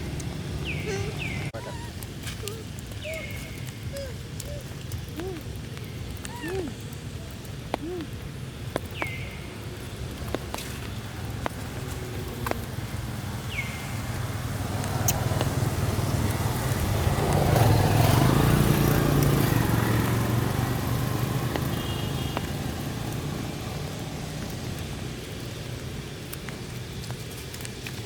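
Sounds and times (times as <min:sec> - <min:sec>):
vehicle passing by: 0:11.6 - 0:25.1.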